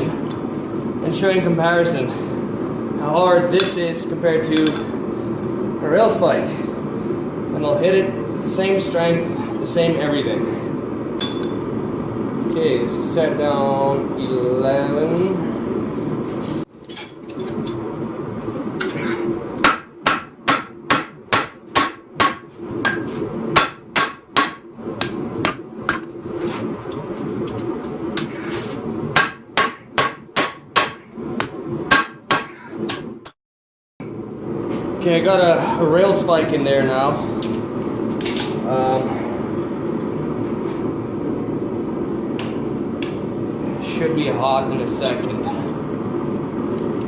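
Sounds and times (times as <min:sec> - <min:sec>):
hammer ringing on anvil: 0:11.2 - 0:11.6
steady low drone: 0:34.0 - 0:47.0.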